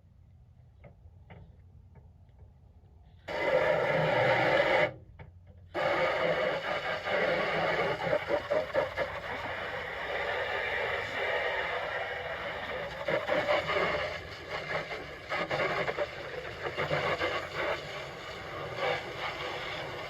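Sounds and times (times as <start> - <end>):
water spraying from a hose: 5.8 - 20.0.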